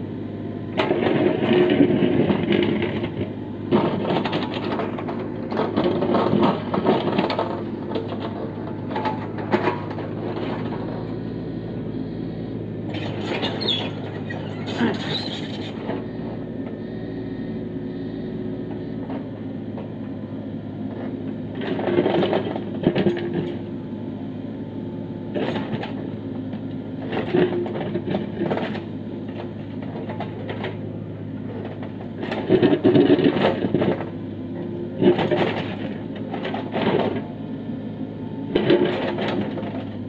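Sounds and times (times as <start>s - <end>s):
diesel engine running: 0.0s - 40.0s
excavator scraping and knocking rock: 0.8s - 11.1s, 12.9s - 16.0s, 20.9s - 23.7s, 25.3s - 26.1s, 27.0s - 30.8s, 31.5s - 34.2s, 35.0s - 37.3s, 38.5s - 40.0s.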